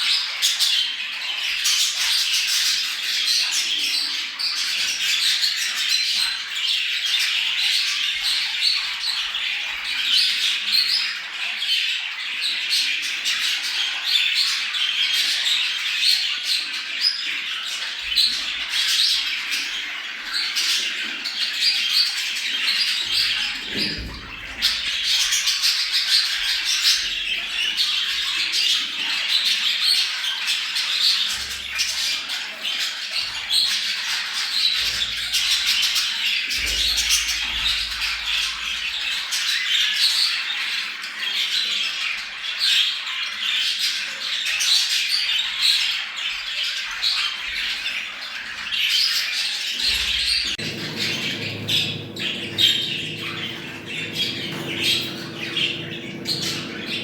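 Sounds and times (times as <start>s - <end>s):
budgerigars chattering and squawking: 0.1s - 28.2s, 49.7s - 57.0s
low steady hum: 50.4s - 57.0s.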